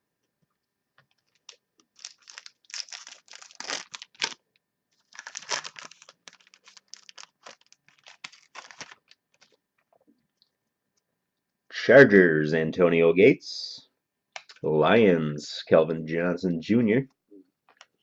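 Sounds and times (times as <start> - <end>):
foil wrapper crinkling and tearing: 1.1 - 9.6
cards being handled: 5.0 - 9.6.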